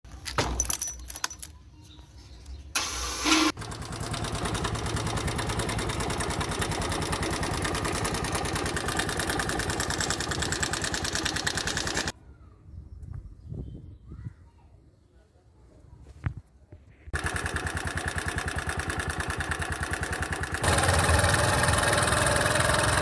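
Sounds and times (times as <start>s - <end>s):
motorcycle engine cranking and running: 2.8s - 12.1s, 17.2s - 23.0s
engine knocking: 3.6s - 12.1s, 17.2s - 23.0s.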